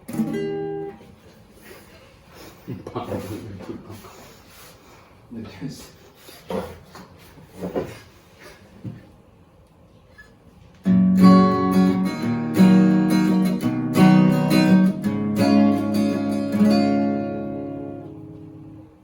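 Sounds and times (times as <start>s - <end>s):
acoustic guitar strumming chords: 0.0s - 1.1s, 10.8s - 19.0s.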